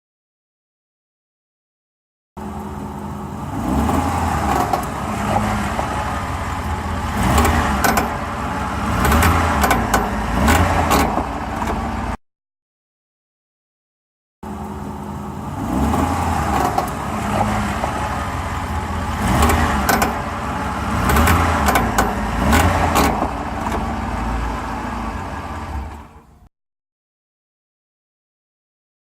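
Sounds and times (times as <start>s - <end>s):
pickup truck engine running: 2.4s - 12.2s, 14.4s - 26.4s
sharp creaks and clicks: 19.1s - 24.2s.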